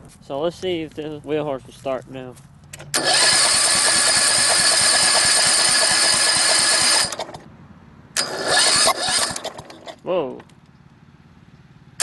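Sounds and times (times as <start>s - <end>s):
garden tractor engine starting: 2.7s - 7.5s, 8.2s - 11.0s.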